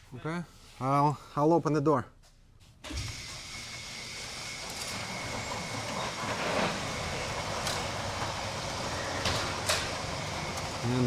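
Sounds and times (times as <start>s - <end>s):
motorised door rolling open: 2.9s - 11.0s
thin motor whine: 2.9s - 11.0s.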